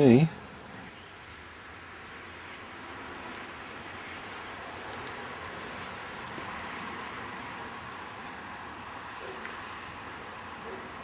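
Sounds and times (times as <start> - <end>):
insects chirring: 0.0 - 11.0.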